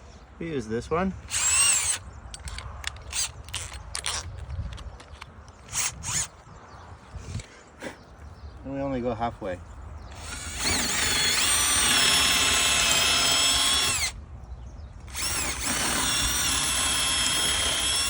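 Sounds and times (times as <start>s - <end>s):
power drill whining: 1.3s - 2.0s, 5.7s - 6.3s, 10.1s - 14.2s, 15.1s - 18.0s.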